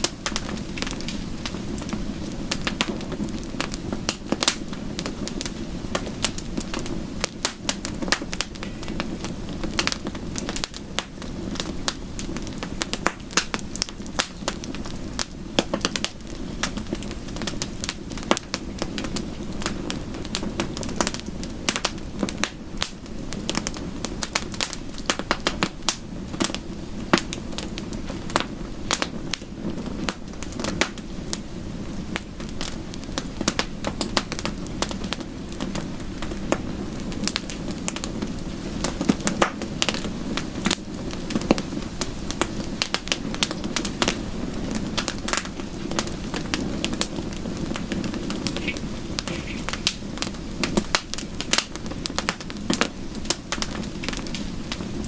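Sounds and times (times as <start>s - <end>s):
wood fire crackling: 0.0s - 55.0s
sharp pops: 48.5s - 50.0s.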